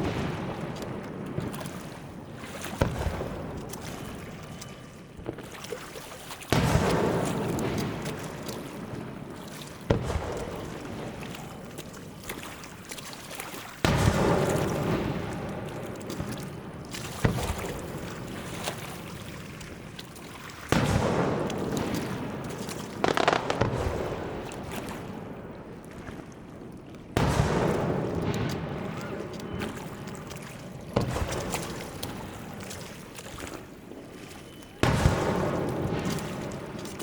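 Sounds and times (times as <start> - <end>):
firework shells booming: 2.8 - 3.9, 6.5 - 9.2, 9.8 - 11.4, 20.7 - 25.9, 27.1 - 29.7, 30.9 - 32.4, 34.8 - 37.0
firework crackling: 20.8 - 25.2.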